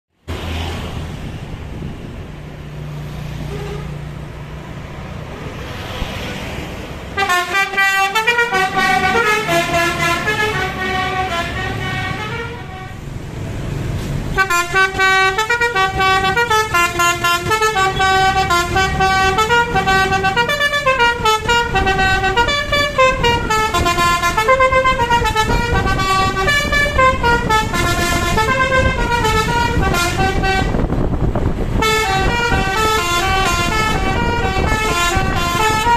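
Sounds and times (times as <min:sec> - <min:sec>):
traffic noise: 0:00.1 - 0:35.9
engine noise: 0:00.2 - 0:35.9
musical air horn melody: 0:07.2 - 0:13.0, 0:14.3 - 0:30.9, 0:31.8 - 0:35.9.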